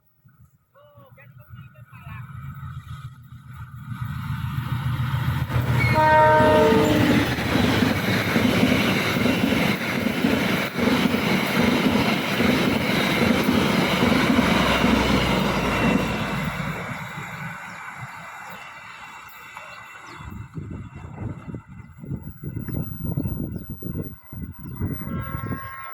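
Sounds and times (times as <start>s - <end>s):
train wheels clattering over rails: 2.3s - 22.4s
train horn: 5.8s - 7.8s, 24.8s - 25.9s.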